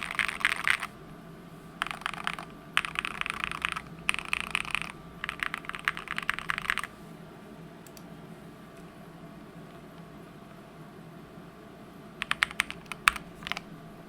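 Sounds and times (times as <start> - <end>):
mechanical keyboard typing: 0.0 - 0.9, 1.8 - 6.9, 12.2 - 13.7.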